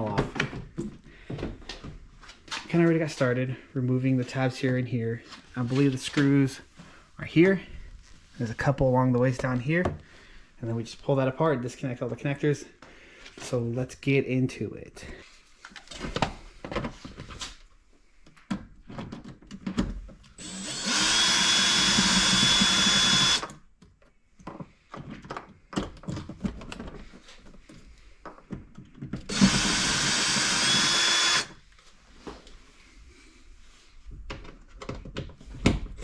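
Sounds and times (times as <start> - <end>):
cordless drill whining: 20.4 - 23.6, 29.3 - 31.6
clicks and knocks of handling: 23.8 - 29.3, 34.2 - 36.0.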